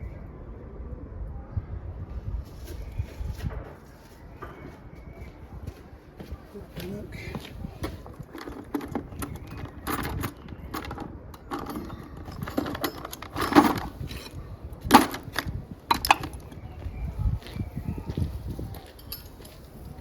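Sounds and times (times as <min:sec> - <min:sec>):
scrap metal clinking and knocking: 0:07.8 - 0:16.6, 0:18.8 - 0:20.0.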